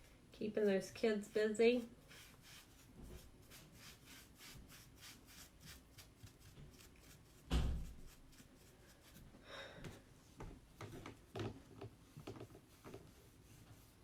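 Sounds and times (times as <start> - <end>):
rubbing strokes on wood: 1.4 - 9.3
thump: 7.5 - 8.1.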